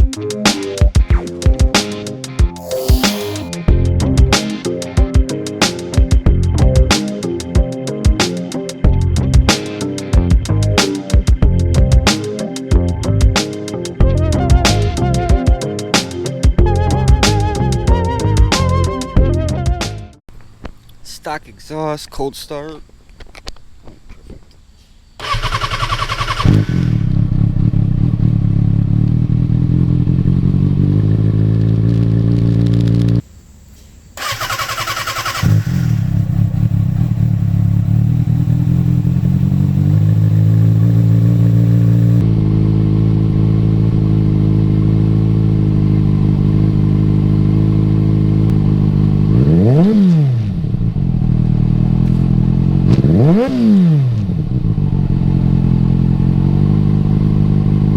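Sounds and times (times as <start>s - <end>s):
engine starter cranking: 25.2s - 27.1s, 34.2s - 36.4s
motorcycle engine idling: 25.2s - 31.9s, 34.2s - 47.4s
engine throttle blips: 25.2s - 33.2s, 34.2s - 42.6s.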